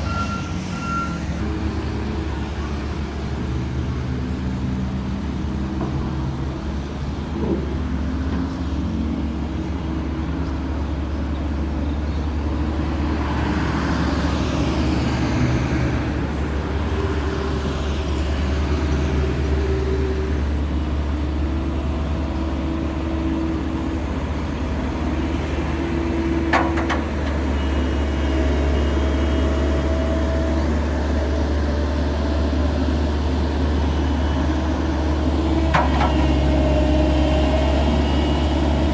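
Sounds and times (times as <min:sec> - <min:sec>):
diesel construction machinery humming: 0:00.0 - 0:38.9.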